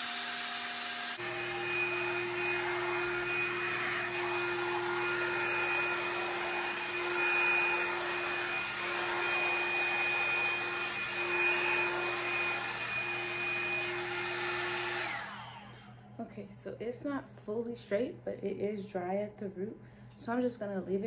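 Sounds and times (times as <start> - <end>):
hot air brush motor humming: 0.0 - 16.1.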